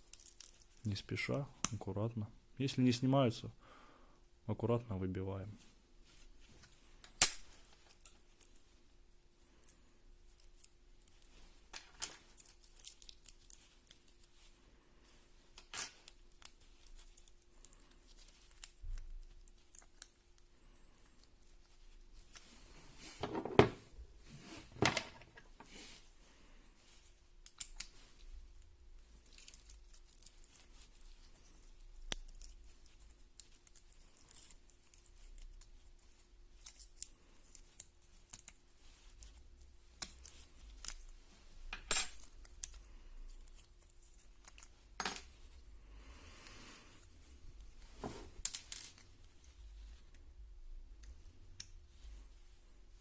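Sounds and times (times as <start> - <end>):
small metal parts clicking: 0.0 - 0.8, 11.7 - 14.3, 29.2 - 35.7.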